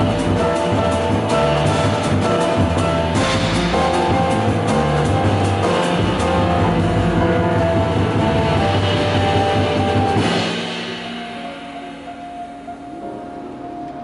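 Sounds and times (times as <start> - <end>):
jazz piano trio playing: 0.0 - 14.0
cymbal crash: 8.8 - 12.9.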